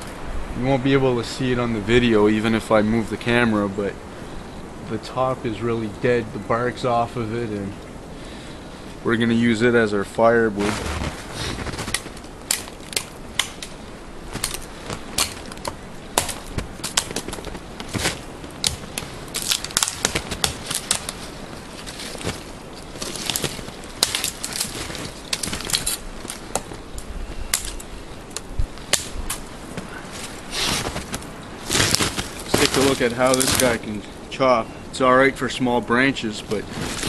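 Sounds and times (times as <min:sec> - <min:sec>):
dry wood cracking and snapping: 0:10.6 - 0:34.2.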